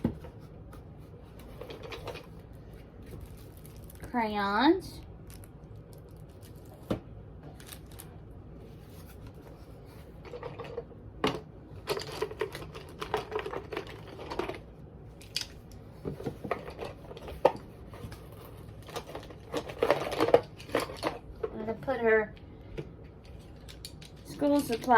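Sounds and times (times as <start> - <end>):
rustling and rattling in a box: 0.0 - 4.1, 8.7 - 21.8.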